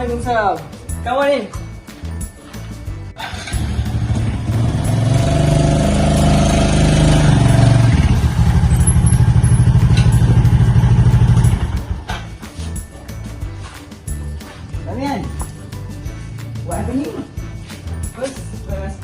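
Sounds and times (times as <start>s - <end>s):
engine revving and idling: 3.2s - 12.1s.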